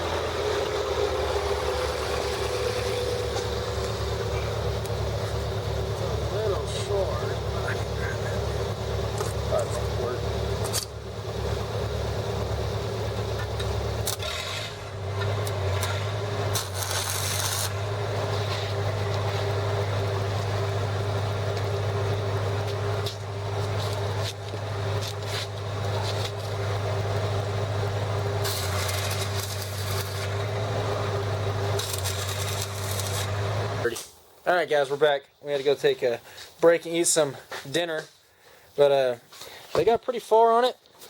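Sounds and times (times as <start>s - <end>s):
welder engine droning: 0.0s - 34.6s
crackling hiss: 10.6s - 27.3s, 27.9s - 34.9s.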